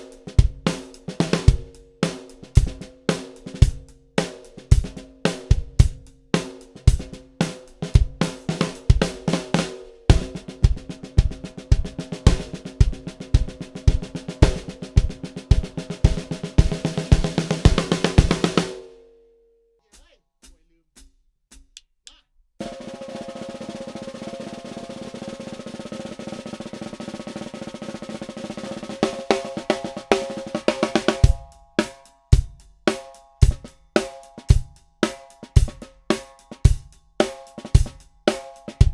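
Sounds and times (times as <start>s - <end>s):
snare drum groove: 0.0s - 18.9s, 19.9s - 21.8s, 22.6s - 38.9s
snare drum roll: 0.0s - 18.9s, 22.6s - 38.9s
bass drum: 4.7s - 6.2s, 10.1s - 18.6s, 31.2s - 31.5s, 32.4s - 32.8s, 33.4s - 33.8s, 35.6s - 36.1s, 37.8s - 38.2s.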